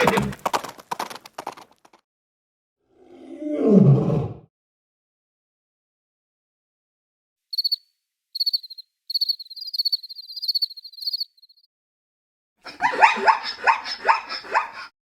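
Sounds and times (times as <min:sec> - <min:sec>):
cricket chirping trills: 0:07.5 - 0:11.7.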